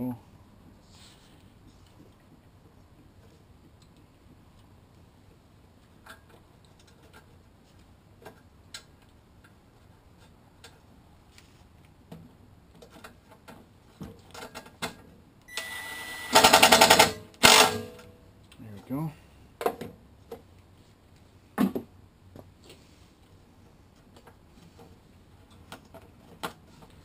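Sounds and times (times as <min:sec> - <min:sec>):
loud rapid mechanical rattle: 0:16.3 - 0:17.8.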